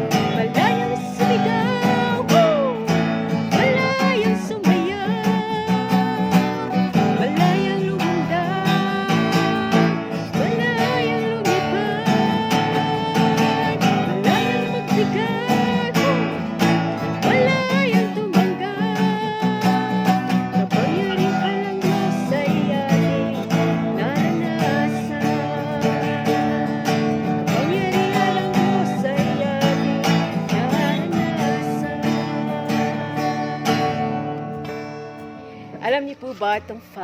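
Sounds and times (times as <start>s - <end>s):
acoustic guitar strumming: 0.0s - 37.0s
person singing: 0.0s - 37.0s.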